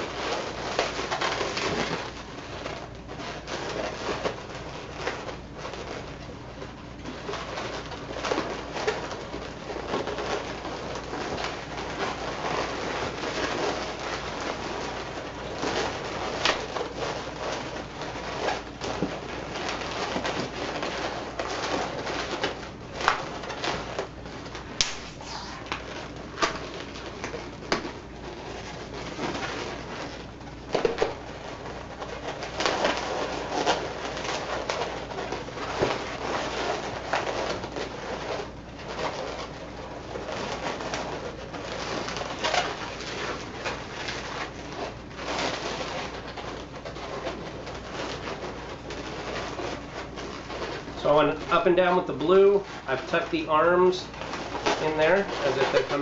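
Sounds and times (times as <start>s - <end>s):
balloons squeaking and rubbing: 0.0s - 56.0s
balloon snaps: 24.8s - 25.8s.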